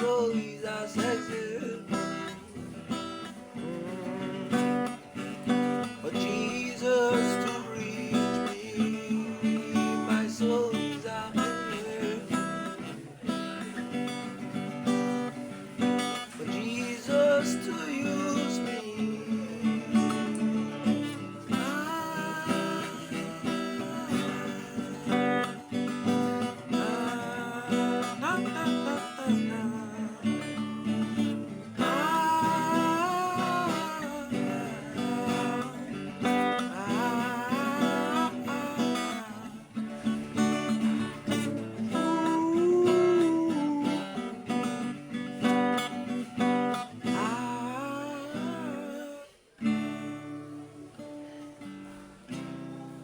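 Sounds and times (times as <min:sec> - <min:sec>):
person singing wordless melody: 0:00.0 - 0:02.7, 0:03.3 - 0:50.7
acoustic guitar strumming: 0:00.0 - 0:53.0.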